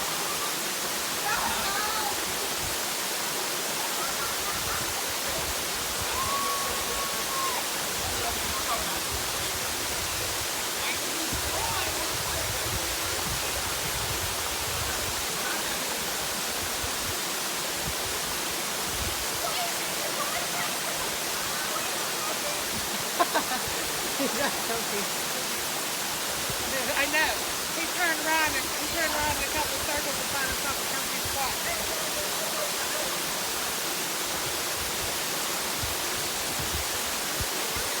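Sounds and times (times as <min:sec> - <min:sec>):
rushing falling water: 0:00.0 - 0:38.0.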